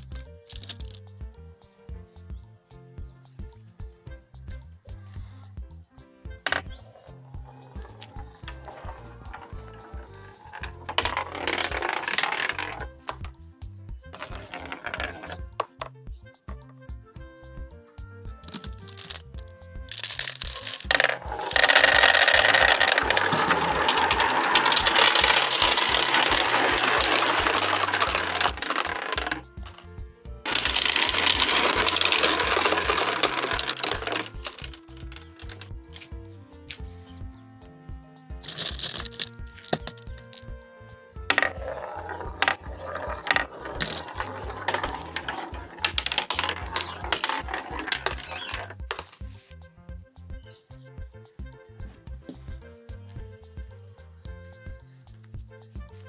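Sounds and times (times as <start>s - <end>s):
marbles rolling and clattering: 0.0s - 1.3s, 6.2s - 16.0s, 18.2s - 37.0s, 38.4s - 49.6s.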